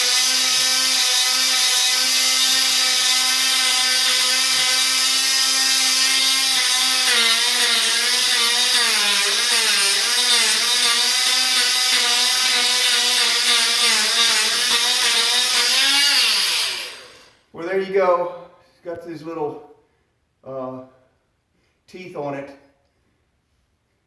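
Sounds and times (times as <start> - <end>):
oscillating multi-tool whine: 0.0 - 17.4.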